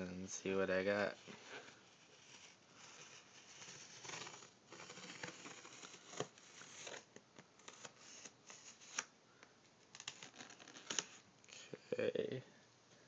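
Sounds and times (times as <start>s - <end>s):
package rustling and scraping: 1.2s - 9.1s.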